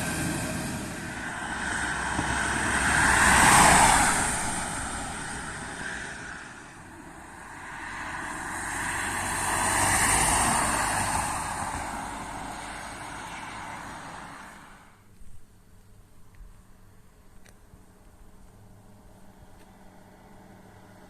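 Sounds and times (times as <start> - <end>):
vehicle driving past: 0.0 - 14.9.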